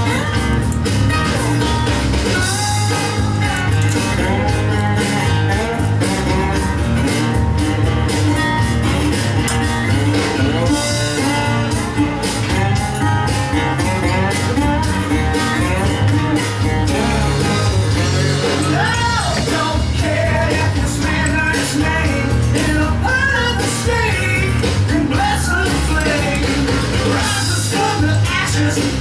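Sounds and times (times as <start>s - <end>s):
rock music with guitar: 0.0s - 29.0s
person singing: 18.6s - 29.0s.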